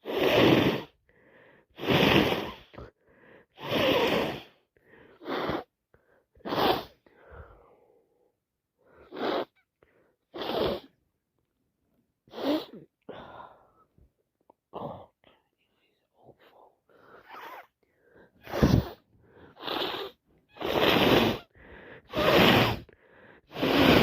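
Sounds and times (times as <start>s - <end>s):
person sniffing: 0.0s - 5.7s, 6.4s - 7.8s, 8.8s - 11.0s, 12.3s - 13.3s, 16.9s - 24.0s.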